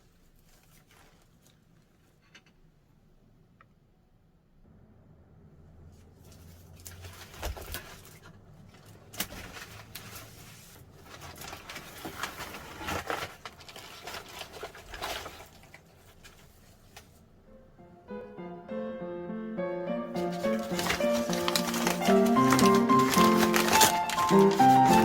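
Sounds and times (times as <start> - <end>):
rustling and scraping: 0.0 - 2.6, 5.9 - 17.3, 20.1 - 25.0.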